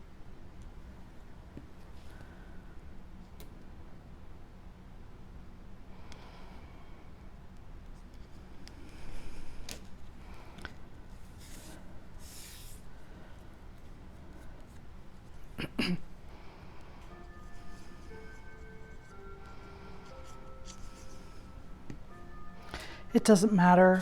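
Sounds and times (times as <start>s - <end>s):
paper rustling and sliding: 11.2s - 13.0s.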